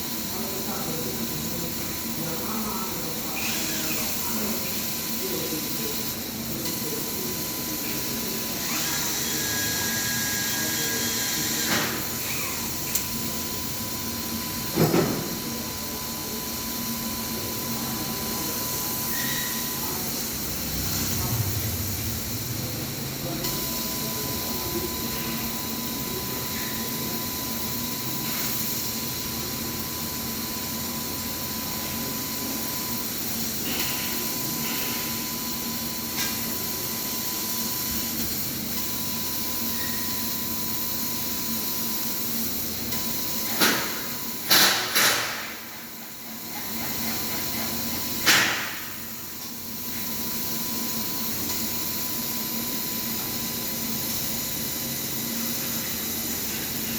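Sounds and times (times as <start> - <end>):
laser cutter hiss and whine: 0.0 - 56.9.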